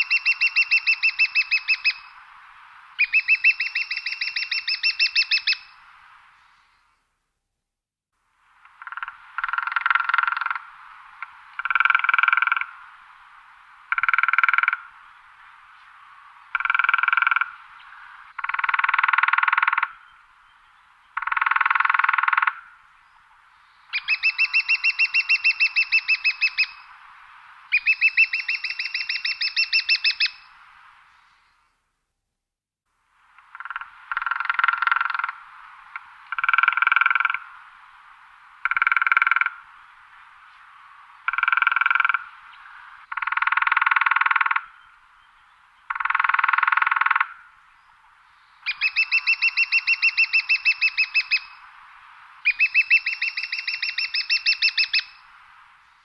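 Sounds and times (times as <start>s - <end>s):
woodpecker drumming on wood: 8.6s - 10.6s, 13.9s - 14.9s, 16.5s - 17.6s, 18.4s - 20.0s, 21.2s - 22.6s, 33.4s - 37.5s, 38.6s - 39.6s, 41.3s - 42.3s, 43.1s - 44.7s, 45.9s - 47.4s.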